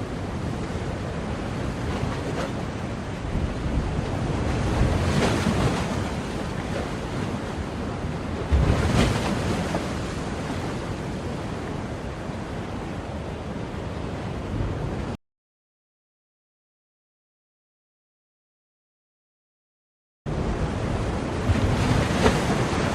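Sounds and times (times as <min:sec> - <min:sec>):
ocean waves breaking: 0:00.0 - 0:15.2, 0:20.3 - 0:22.9.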